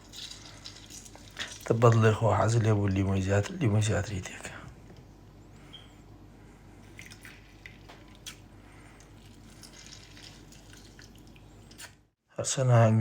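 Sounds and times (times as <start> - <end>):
juice dripping into cup: 0.0 - 4.2, 6.8 - 12.0.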